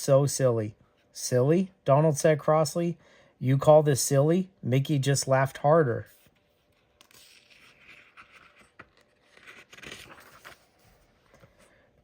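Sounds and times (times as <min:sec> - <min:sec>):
paper page turning: 0:06.1 - 0:11.7.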